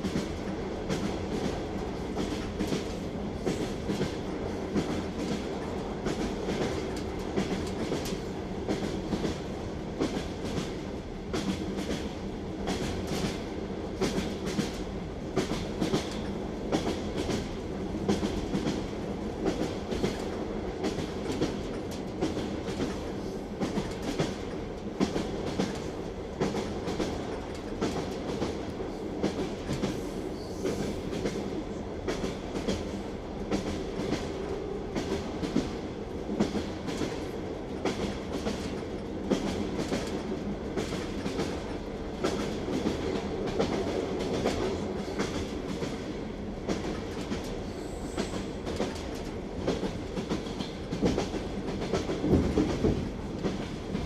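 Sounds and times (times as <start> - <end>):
train wheels clicking over rail joints: 14.0 - 54.0.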